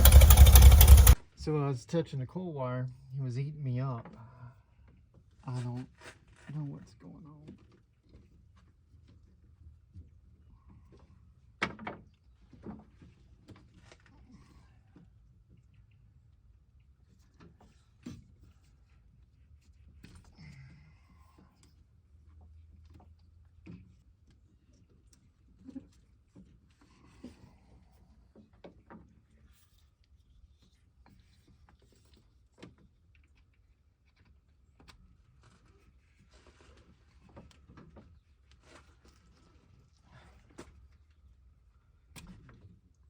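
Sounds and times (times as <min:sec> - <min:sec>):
faint clicks and knocks: 0:00.0 - 0:01.2
low hum: 0:00.0 - 0:01.5.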